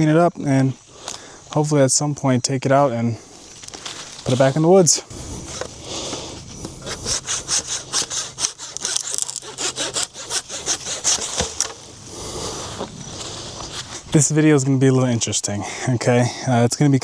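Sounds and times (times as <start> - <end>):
saw cutting wood: 5.1 - 14.1.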